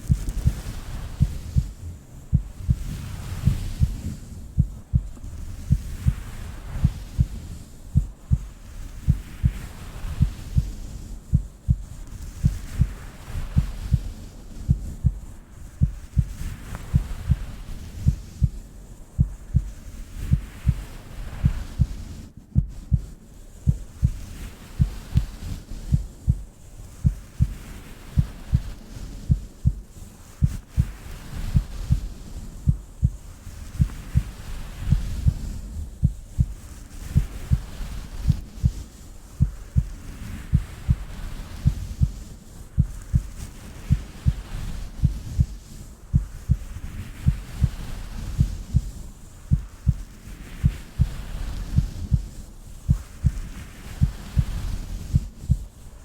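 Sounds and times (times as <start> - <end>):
heartbeat thumps: 0.0 - 28.7, 29.3 - 42.2, 42.8 - 55.8
soft hiss: 0.0 - 56.0.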